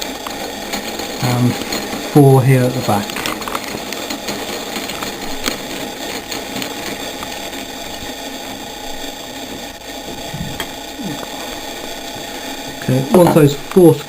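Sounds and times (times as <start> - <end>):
screwdriver ratcheting whirr: 0.0 - 9.6.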